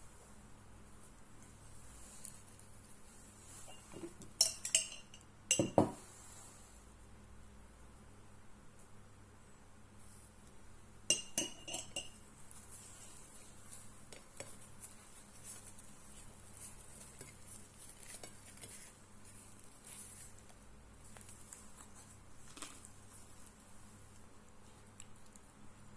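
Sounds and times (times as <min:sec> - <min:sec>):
faint cutlery scraping: 0:03.5 - 0:06.0, 0:11.1 - 0:12.2
cutlery clinking on a plate: 0:03.7 - 0:06.0, 0:11.1 - 0:12.2.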